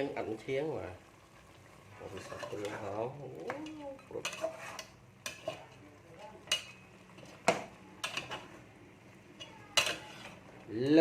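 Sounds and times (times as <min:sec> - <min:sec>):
utensils clinking on kitchenware: 0:06.4 - 0:08.5, 0:09.4 - 0:10.4.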